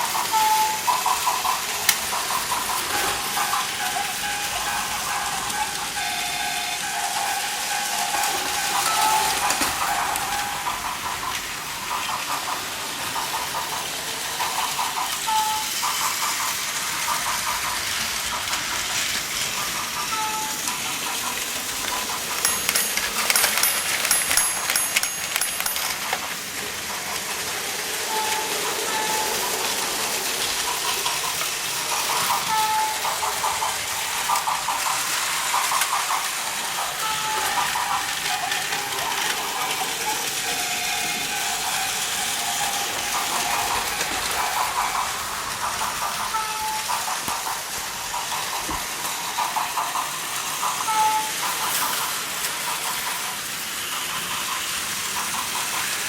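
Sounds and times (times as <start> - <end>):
toy train motors whirring: 0.0 - 56.0
wheel and track clatter: 0.0 - 56.0
high-pitched ringing clicks: 21.9 - 26.3.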